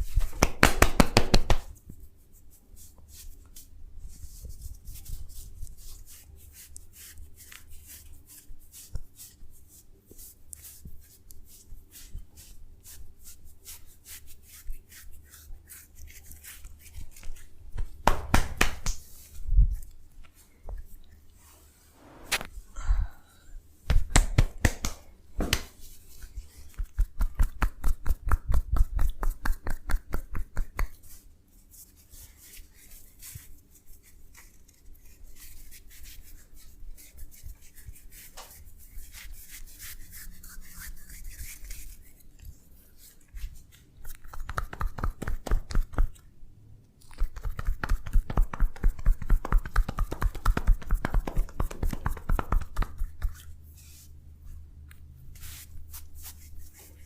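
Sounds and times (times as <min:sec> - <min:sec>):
hands rubbing body: 0:00.0 - 0:22.5, 0:23.9 - 0:46.1, 0:47.2 - 0:54.2, 0:55.3 - 0:57.0
hands tapping on body: 0:00.2 - 0:01.7, 0:17.8 - 0:19.1, 0:23.9 - 0:25.8, 0:26.8 - 0:31.0, 0:44.2 - 0:46.1, 0:47.2 - 0:53.3.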